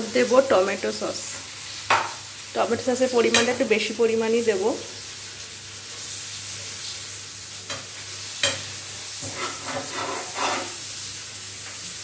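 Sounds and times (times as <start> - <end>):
gravy sizzling in a hot pan: 0.0 - 12.0
spatula scraping pan: 7.7 - 11.1.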